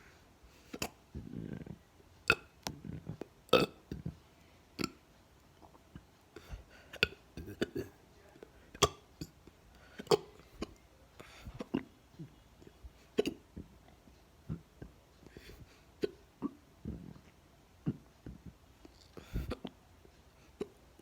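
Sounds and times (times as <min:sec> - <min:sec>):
person hiccuping: 0:07.0 - 0:08.0, 0:08.8 - 0:09.0, 0:10.0 - 0:10.4.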